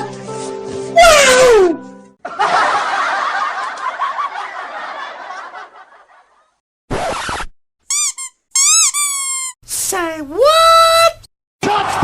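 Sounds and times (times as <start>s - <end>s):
crowd laughing: 2.2s - 6.6s, 11.6s - 12.0s.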